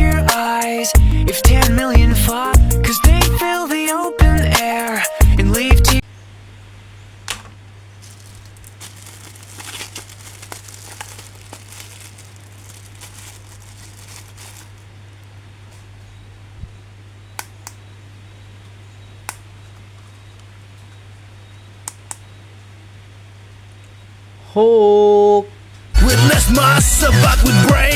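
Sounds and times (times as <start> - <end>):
plastic packaging crinkling: 7.3 - 15.9
sharp clicks: 17.4 - 17.8.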